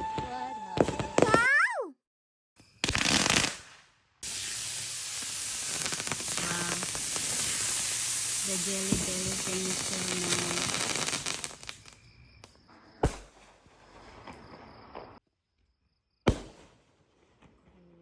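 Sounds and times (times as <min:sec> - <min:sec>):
fireworks bangs: 0:00.0 - 0:01.6, 0:02.8 - 0:15.2, 0:16.3 - 0:16.8
fireworks crackling: 0:02.8 - 0:12.1.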